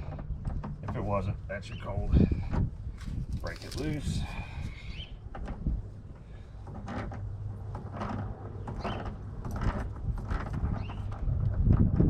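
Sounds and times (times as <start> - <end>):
wrench creaking and scraping: 3.0 - 4.2, 6.2 - 11.2.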